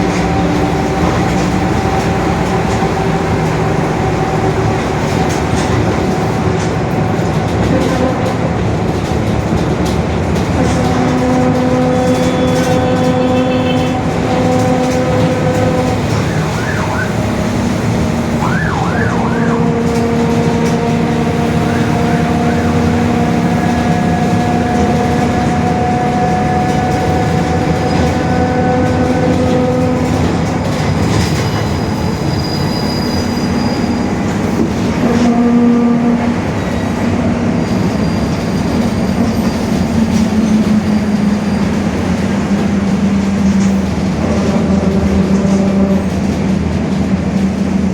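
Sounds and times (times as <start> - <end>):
bus diesel engine running: 0.0 - 47.9
whining tones: 11.8 - 28.4.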